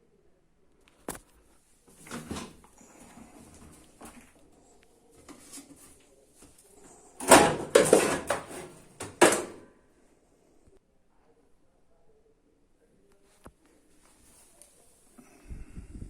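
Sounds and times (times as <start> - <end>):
hard objects clattering: 7.2 - 9.6.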